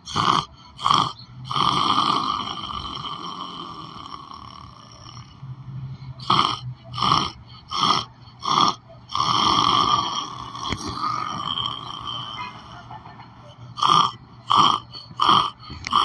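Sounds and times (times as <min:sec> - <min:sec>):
person snoring: 0:00.0 - 0:12.9, 0:13.7 - 0:16.0.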